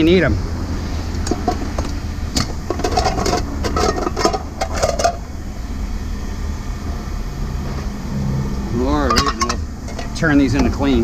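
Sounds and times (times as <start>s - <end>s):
low engine rumble: 0.0s - 11.0s
scrap metal clanking: 1.2s - 5.3s, 9.0s - 10.8s.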